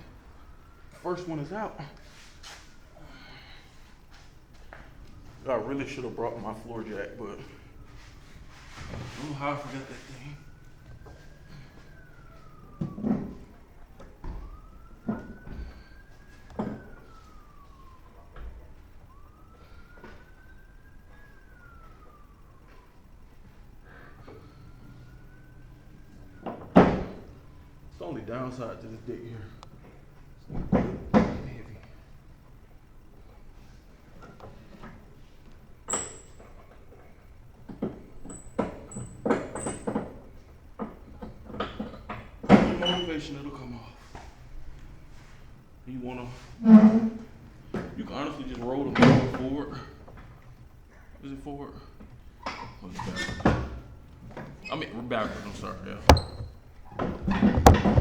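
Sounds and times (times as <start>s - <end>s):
distant siren wailing: 0.0s - 58.0s
metal clanks and knocks: 56.1s - 58.0s
sharp metal knocks: 57.6s - 58.0s.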